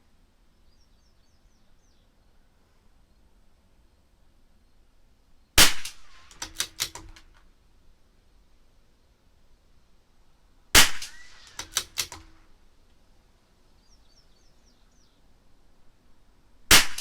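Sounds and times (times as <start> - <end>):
rifle shot: 5.6 - 7.3, 10.8 - 12.4, 16.7 - 17.0
rifle bolt clicks: 5.7 - 7.4, 10.8 - 12.4.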